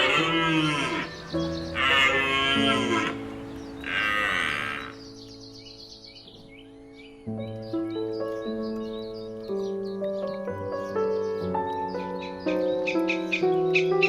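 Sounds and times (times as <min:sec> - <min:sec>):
cattle mooing: 0:00.0 - 0:05.0
background music with held notes: 0:00.0 - 0:14.0.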